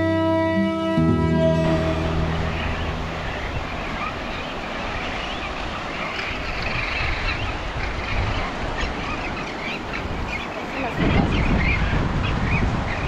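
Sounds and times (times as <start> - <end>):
music track held tones: 0.0 - 4.4
surf: 0.0 - 13.0
wind: 0.0 - 13.0.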